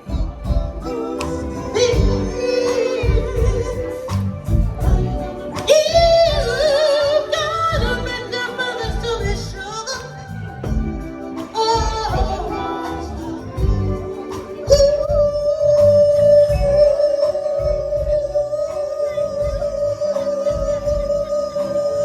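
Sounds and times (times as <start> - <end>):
music with sung vocal: 0.0 - 22.0.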